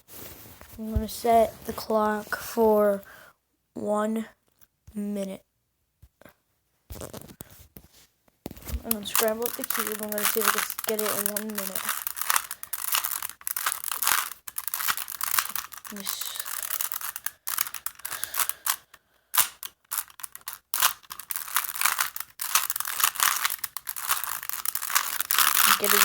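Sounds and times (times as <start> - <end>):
puzzle cube clicking and rattling: 8.5 - 26.0.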